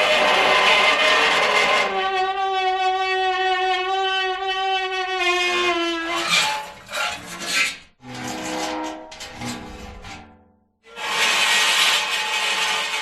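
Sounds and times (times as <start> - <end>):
rough metal scraping: 0.0 - 2.2, 5.2 - 13.0
metal screeching on metal: 0.0 - 13.0.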